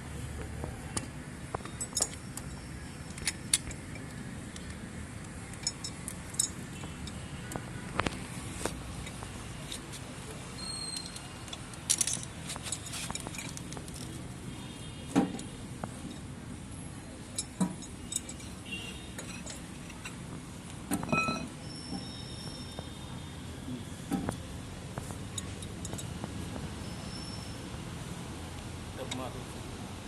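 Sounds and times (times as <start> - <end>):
metal tools clinking and knocking: 1.0 - 4.8, 5.5 - 7.2, 10.6 - 14.2, 17.3 - 20.3, 20.9 - 22.1, 25.4 - 26.2.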